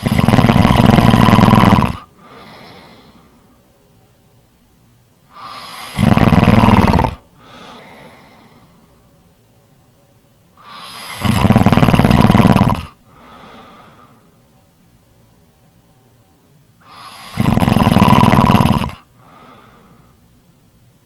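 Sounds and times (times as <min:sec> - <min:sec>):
person snoring: 0:00.0 - 0:03.2, 0:05.3 - 0:08.7, 0:10.6 - 0:14.0, 0:16.8 - 0:19.9
quiet breath out: 0:02.1 - 0:03.6, 0:07.3 - 0:09.2, 0:13.0 - 0:14.5, 0:19.0 - 0:20.3.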